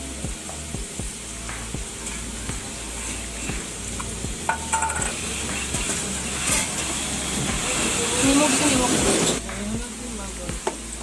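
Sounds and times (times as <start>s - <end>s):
food sizzling in a pan: 0.0s - 11.0s
metal spoon scraping a pan: 2.0s - 9.4s
ringing metal clank: 4.5s - 5.2s.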